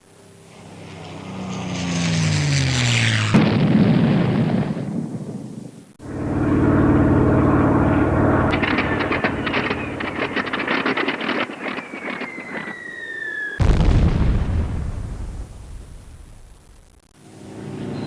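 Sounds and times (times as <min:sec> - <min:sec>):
propeller aircraft engine: 0:00.0 - 0:13.6, 0:16.6 - 0:18.0
propeller plane engine drone: 0:00.0 - 0:13.6, 0:16.0 - 0:18.0
bomb explosion: 0:03.4 - 0:05.2, 0:13.6 - 0:17.1.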